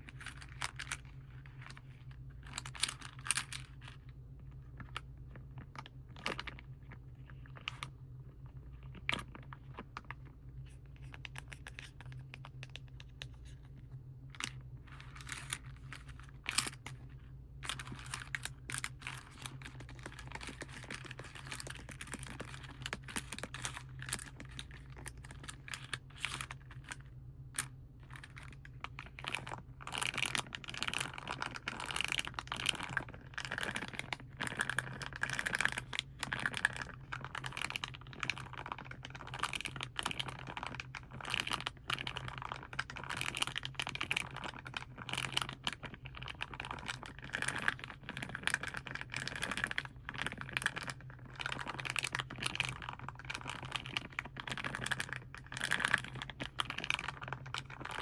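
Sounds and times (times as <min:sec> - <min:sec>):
steady low hum: 0:00.0 - 0:58.0
tapping and scratching clicks: 0:10.9 - 0:58.0
packaging crinkling: 0:17.6 - 0:27.0.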